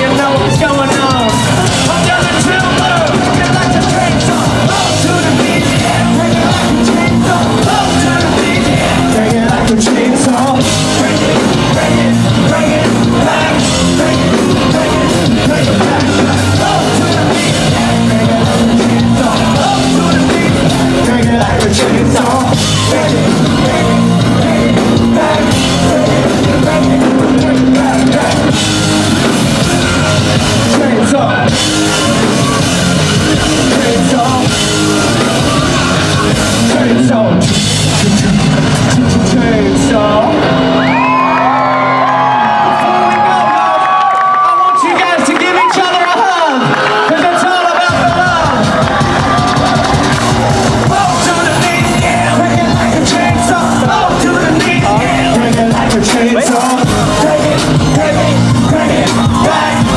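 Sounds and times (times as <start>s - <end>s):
person singing: 0.0s - 43.7s, 46.4s - 59.9s
live rock band playing: 0.0s - 59.9s.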